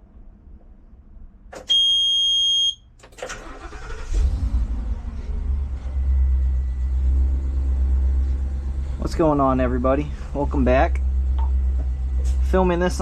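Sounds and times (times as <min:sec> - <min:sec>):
long electronic warning beep: 0:01.7 - 0:02.9
engine cranking and idling: 0:03.0 - 0:13.0.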